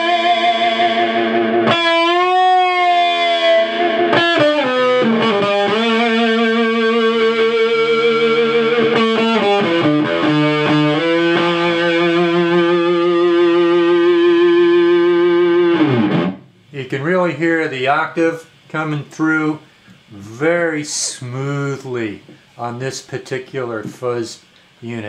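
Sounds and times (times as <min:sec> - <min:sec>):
fuzz electric guitar: 0:00.0 - 0:16.6.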